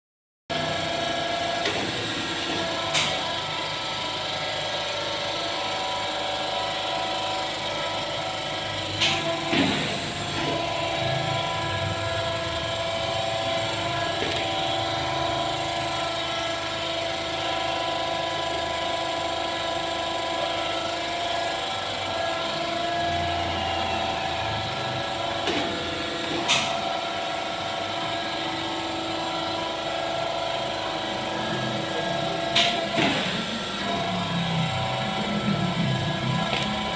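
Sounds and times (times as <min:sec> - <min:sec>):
embossing machine humming: 0:00.5 - 0:36.9.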